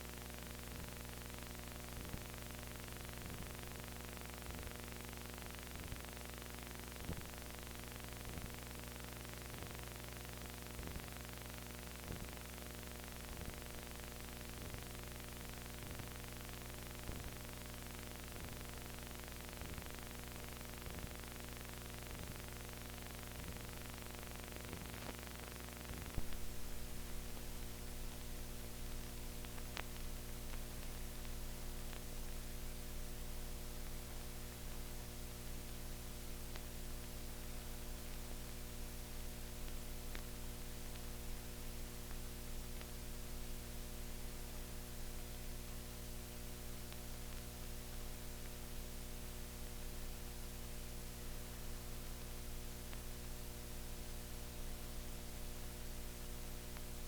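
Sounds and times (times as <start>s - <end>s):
electrical hum with hiss: 0.0s - 57.0s
faint clicks: 29.4s - 32.1s.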